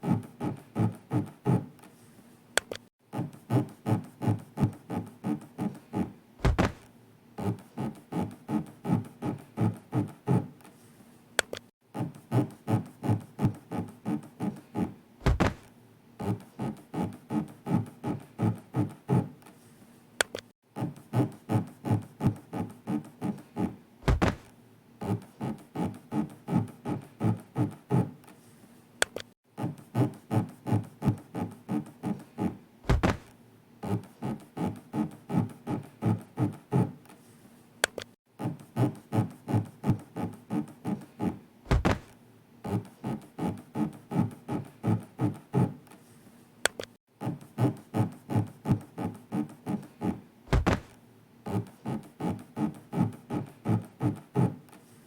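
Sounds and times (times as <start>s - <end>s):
deep thud: 6.4s - 6.9s, 15.2s - 15.7s, 24.1s - 24.5s, 32.9s - 33.3s, 41.7s - 42.1s, 50.5s - 51.0s.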